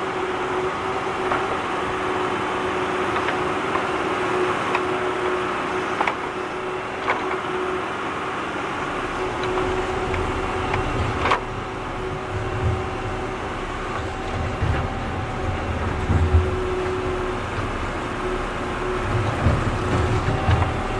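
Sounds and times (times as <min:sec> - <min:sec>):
tractor engine running: 0:00.0 - 0:20.9
heavy low rumble: 0:09.7 - 0:20.9.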